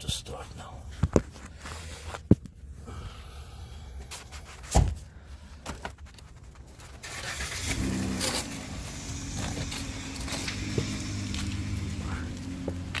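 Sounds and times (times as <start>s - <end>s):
car engine starting and running: 6.9s - 13.0s.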